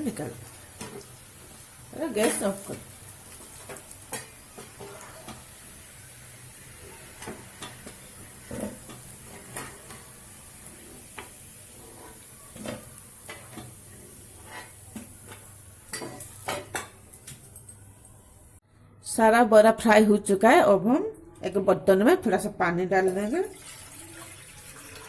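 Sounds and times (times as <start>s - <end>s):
oil sizzling: 0.0s - 18.6s, 23.2s - 25.0s
metal spoon scraping a pan: 2.0s - 5.8s, 6.8s - 17.0s.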